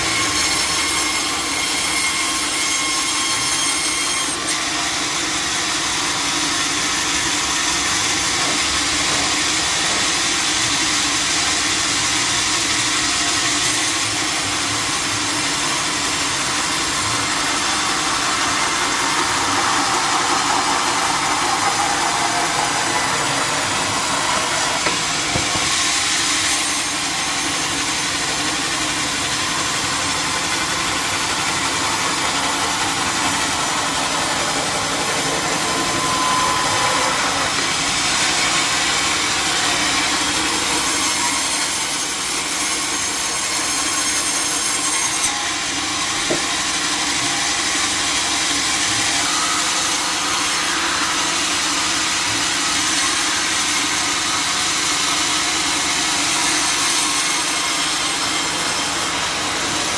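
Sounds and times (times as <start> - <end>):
sawmill saw cutting timber: 0.0 - 59.9
machine hum: 14.7 - 39.5.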